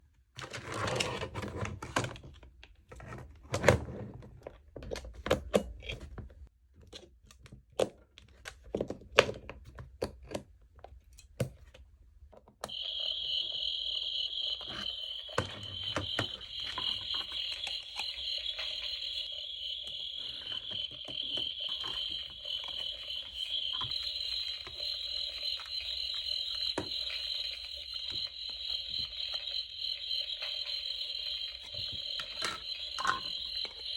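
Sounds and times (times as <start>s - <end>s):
crackling clicks: 12.7s - 33.9s
crickets chirring: 12.7s - 33.9s.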